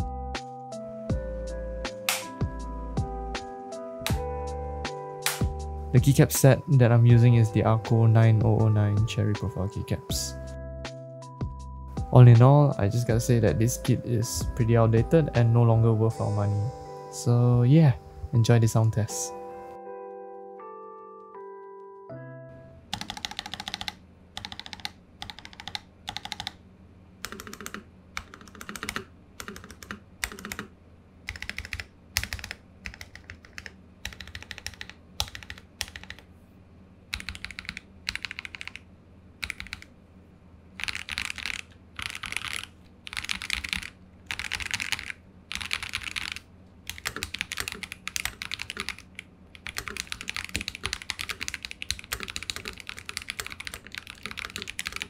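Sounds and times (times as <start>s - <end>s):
mechanical keyboard typing: 22.9s - 26.6s, 27.2s - 30.7s, 31.3s - 36.3s, 37.1s - 38.8s, 39.4s - 39.9s, 40.8s - 55.0s.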